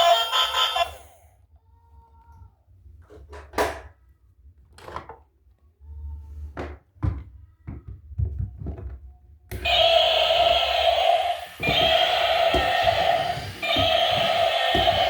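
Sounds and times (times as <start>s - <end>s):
toy electronic tone: 0.0s - 1.1s, 9.6s - 15.0s
plastic toys knocking: 11.6s - 15.0s.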